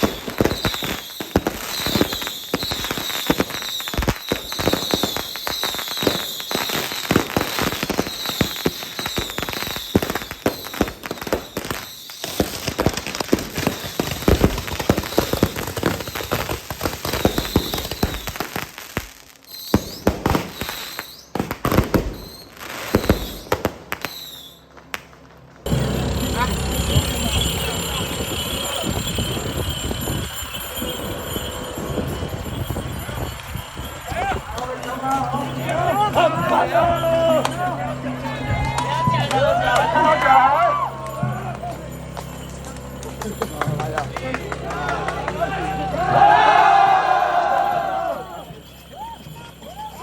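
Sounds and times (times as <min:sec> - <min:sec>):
crackling hiss: 0:00.0 - 0:25.2
fireworks cracking and banging: 0:00.0 - 0:46.3.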